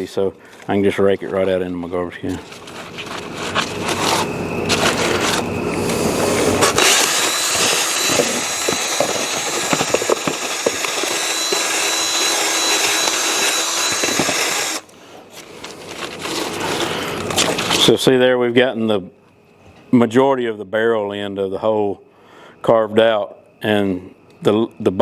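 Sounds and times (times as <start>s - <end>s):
power drill boring into foam: 5.9s - 14.9s.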